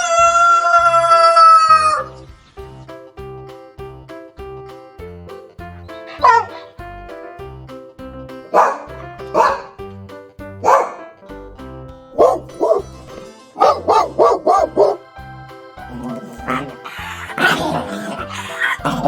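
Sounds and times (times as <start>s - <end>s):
background music with steady beat: 0.9s - 16.8s
dog barking: 6.0s - 6.8s, 8.5s - 9.8s, 10.6s - 11.1s, 12.2s - 12.9s, 13.6s - 15.0s, 15.9s - 19.0s.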